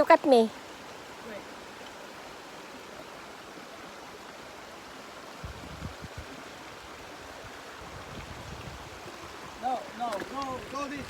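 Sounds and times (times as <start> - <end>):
sea water washing ashore: 6.1 - 11.0.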